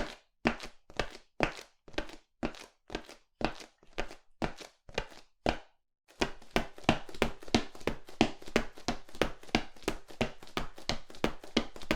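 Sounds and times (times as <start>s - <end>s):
footsteps on hard surface: 5.0s - 11.9s.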